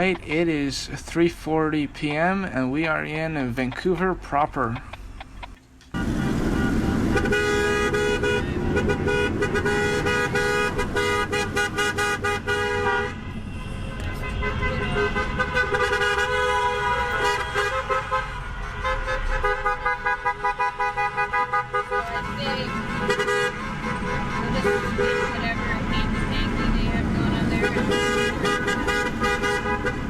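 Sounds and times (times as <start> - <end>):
vehicle horns honking: 5.9 - 30.0
rapid repeated horn beeps: 6.0 - 30.0.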